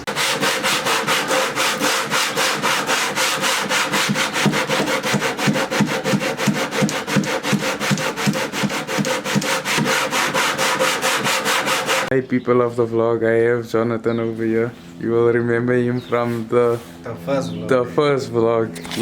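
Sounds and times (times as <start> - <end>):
sandpaper on wood: 0.0 - 12.1.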